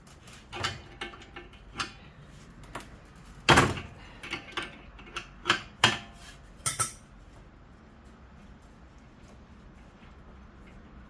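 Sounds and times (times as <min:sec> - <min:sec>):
metal clanks and knocks: 0:00.3 - 0:02.1.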